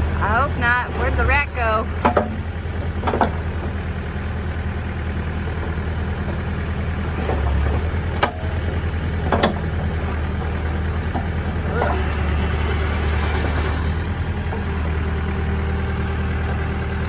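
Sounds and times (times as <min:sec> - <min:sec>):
backhoe engine idling: 0:00.0 - 0:17.0.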